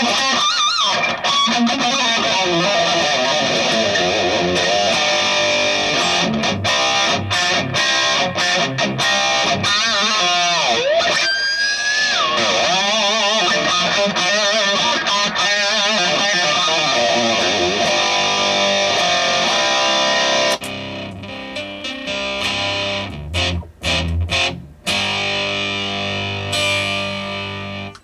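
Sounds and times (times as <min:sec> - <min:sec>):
distorted electric guitar: 0:00.0 - 0:28.0.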